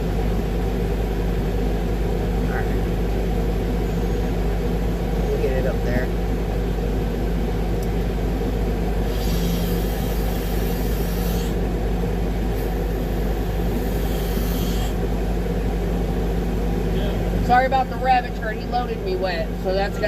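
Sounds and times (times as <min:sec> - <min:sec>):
diesel truck engine rumble: 0:00.0 - 0:20.0
hiss: 0:13.8 - 0:15.0.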